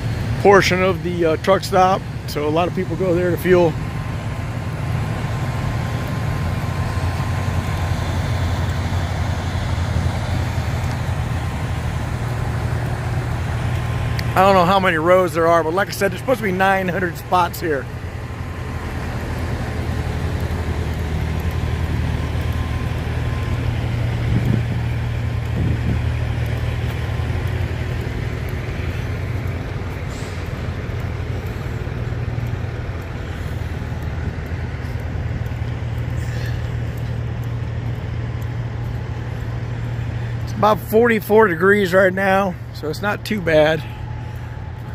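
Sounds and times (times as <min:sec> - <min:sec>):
diesel truck engines rumbling: 0:00.0 - 0:44.9
traffic noise: 0:00.0 - 0:44.9.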